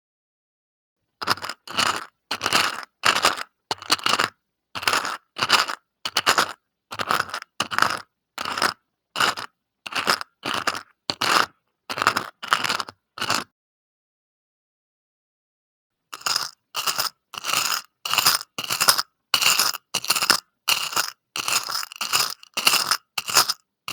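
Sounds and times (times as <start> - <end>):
trinkets crunching and scraping: 9.3 - 13.4, 16.2 - 23.9.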